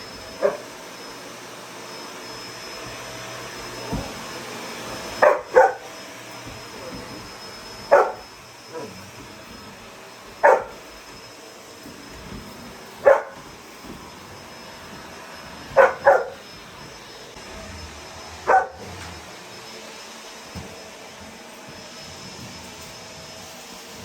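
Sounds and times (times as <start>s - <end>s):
vacuum cleaner humming: 0.0s - 24.0s
dog barking: 0.4s - 0.7s, 5.2s - 5.9s, 7.9s - 8.9s, 10.4s - 10.8s, 13.0s - 13.4s, 15.8s - 16.4s, 18.4s - 18.9s.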